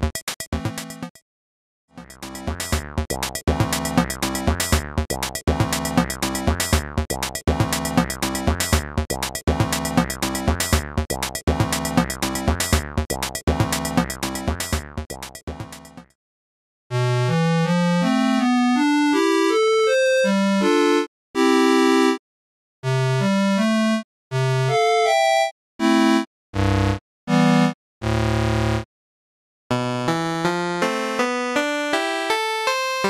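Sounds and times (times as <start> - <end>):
chiptune electronic beat: 0.0 - 1.2, 2.0 - 16.1.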